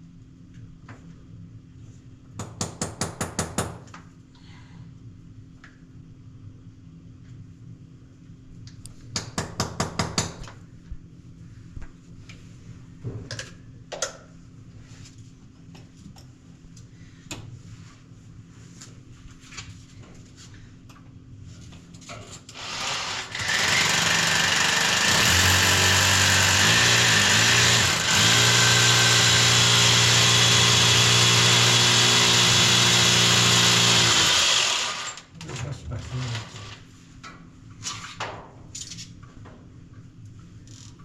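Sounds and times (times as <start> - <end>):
power drill running under load: 22.5 - 35.3.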